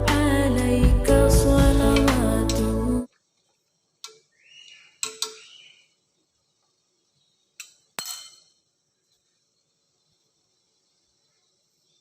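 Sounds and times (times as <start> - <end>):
kitchenware clinking: 7.6 - 8.6.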